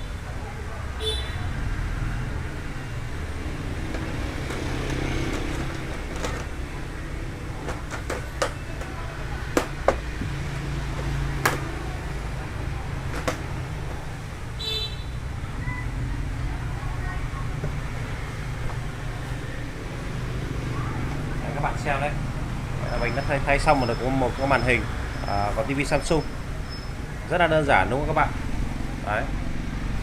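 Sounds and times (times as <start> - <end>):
road traffic rumble: 0.0 - 30.0
vehicle horn toot: 1.0 - 1.5, 14.6 - 15.8
sharp clicks and knocks: 3.8 - 6.8, 7.5 - 11.9, 12.9 - 14.1.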